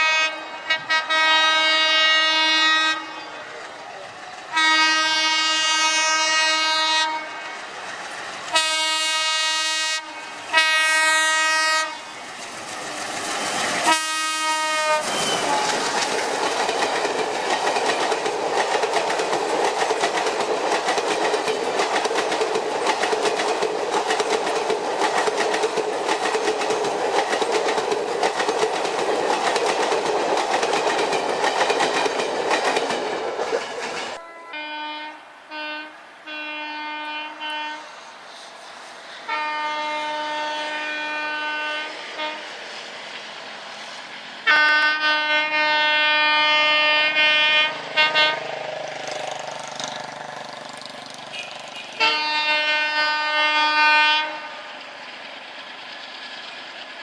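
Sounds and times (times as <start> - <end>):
train horn blasts: 0.0 - 3.4, 4.5 - 7.6, 8.5 - 12.2, 13.8 - 15.8, 34.2 - 38.0, 39.2 - 42.5, 44.5 - 48.6, 51.3 - 54.8
train wheels clattering over rails: 10.4 - 34.2, 47.8 - 52.8.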